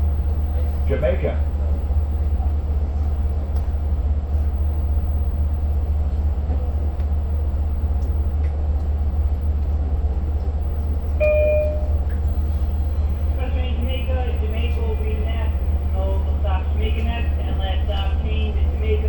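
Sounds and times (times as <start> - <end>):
train passenger car rumble: 0.0 - 19.0
brief high tone: 11.2 - 12.0.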